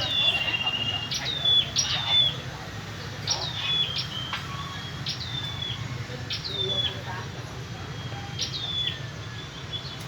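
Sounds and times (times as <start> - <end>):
songbird call: 0.0 - 2.5, 3.2 - 7.1, 7.9 - 10.0.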